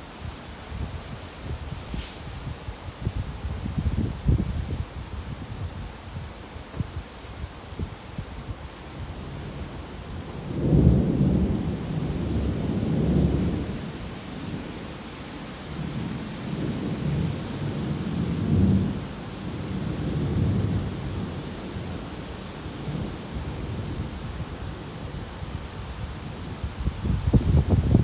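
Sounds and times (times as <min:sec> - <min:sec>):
steady hiss: 0:00.0 - 0:09.7
wind gusting against microphone: 0:00.0 - 0:28.0.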